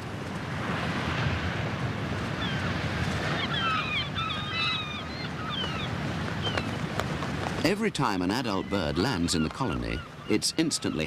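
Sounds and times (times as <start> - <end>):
birds high chirping calls: 3.3 - 6.9, 7.9 - 11.0.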